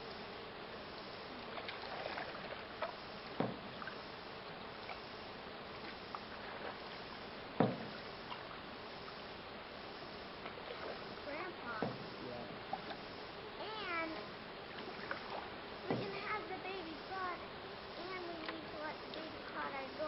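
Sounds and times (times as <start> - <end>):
faint steady hiss: 0.0 - 20.0
knocks on canoe hull: 3.4 - 3.7, 7.6 - 8.0, 11.8 - 12.1, 15.9 - 16.1.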